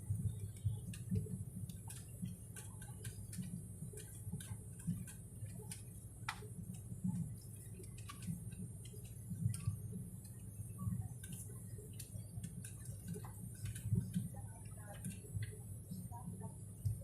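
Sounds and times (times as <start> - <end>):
light clicks and ticks: 0.2 - 16.1.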